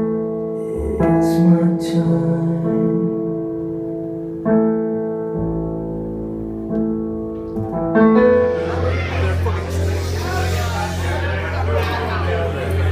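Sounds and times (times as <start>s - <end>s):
keyboard playing slow chords: 0.0s - 12.9s.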